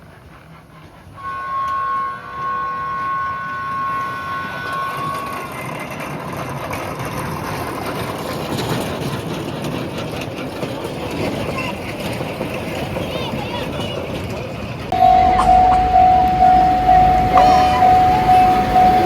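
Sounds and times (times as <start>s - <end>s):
train clattering on track: 0.0s - 19.0s
mini train whistle: 1.2s - 6.2s, 14.9s - 19.0s.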